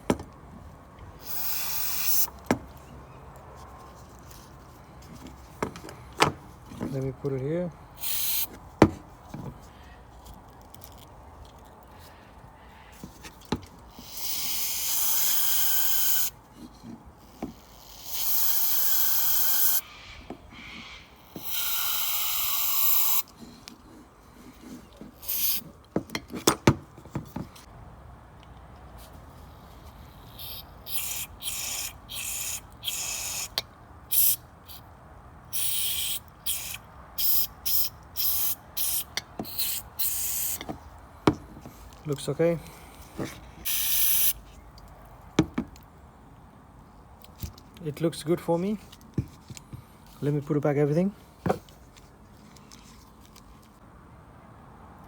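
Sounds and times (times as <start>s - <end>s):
aerosol spray hissing: 1.2s - 2.3s, 8.0s - 8.5s, 17.9s - 19.9s, 20.6s - 23.2s, 30.4s - 33.5s, 35.6s - 40.6s, 43.7s - 44.4s.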